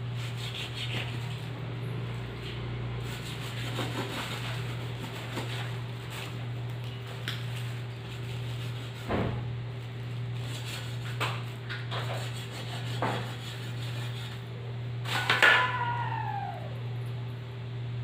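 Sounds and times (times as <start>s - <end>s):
steady low hum: 0.0s - 18.0s
dog whimpering: 15.5s - 16.8s.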